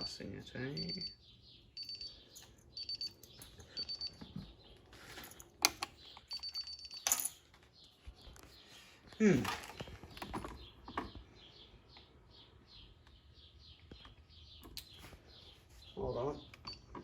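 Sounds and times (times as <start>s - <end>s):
alarm keypad beeping: 0.7s - 4.5s, 6.2s - 7.0s, 16.6s - 17.0s.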